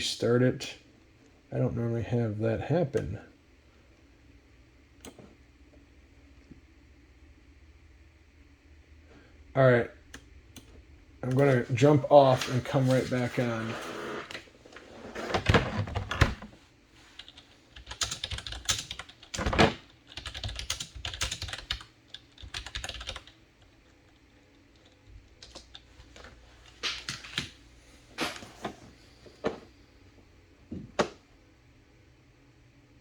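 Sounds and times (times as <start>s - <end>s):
computer keyboard typing: 17.2s - 26.2s.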